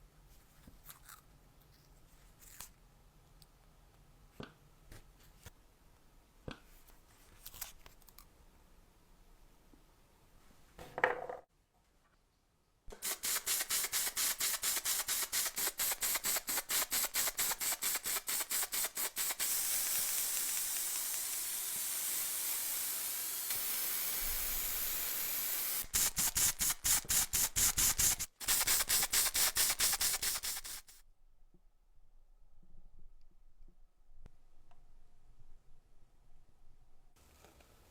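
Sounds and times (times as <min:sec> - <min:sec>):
paint spray hissing: 0:12.9 - 0:31.0.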